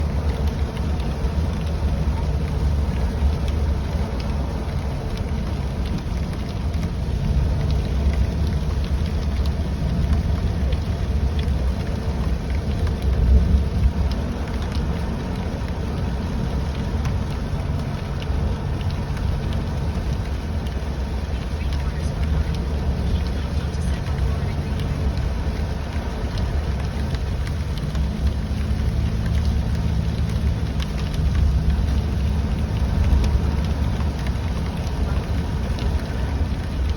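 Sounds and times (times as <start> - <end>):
car driving rumble: 0.0 - 36.9
raindrop ticks: 0.0 - 36.9.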